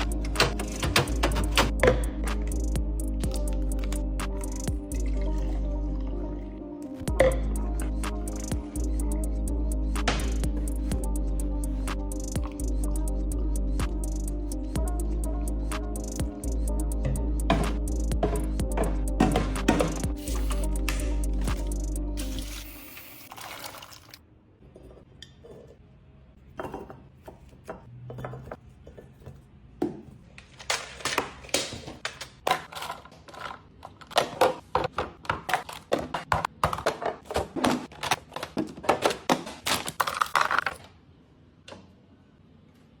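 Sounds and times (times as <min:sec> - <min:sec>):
plastic boxes clicking and knocking: 0:00.0 - 0:02.3, 0:17.5 - 0:20.1, 0:30.6 - 0:40.9.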